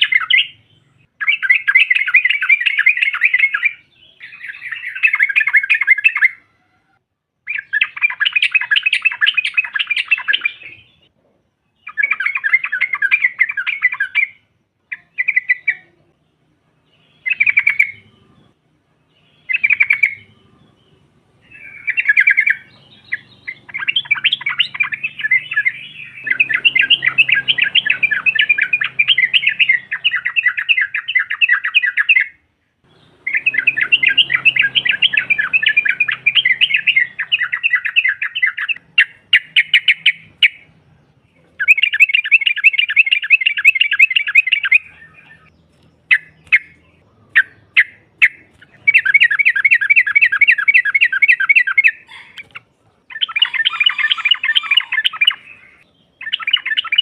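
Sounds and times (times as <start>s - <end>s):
bird chattering calls: 16.9s - 18.6s, 19.2s - 45.5s, 46.1s - 57.0s.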